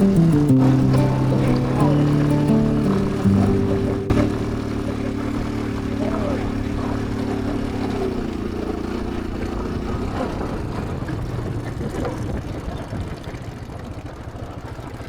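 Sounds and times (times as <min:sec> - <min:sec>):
second higher engine note: 0:00.0 - 0:07.0
quad bike engine running: 0:04.2 - 0:10.8.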